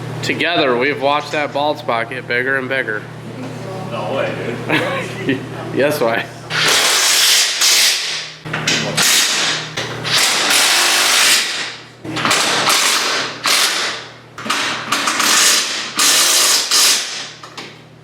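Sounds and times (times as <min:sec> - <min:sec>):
cordless impact wrench bursts: 0:06.5 - 0:08.3, 0:09.0 - 0:17.4.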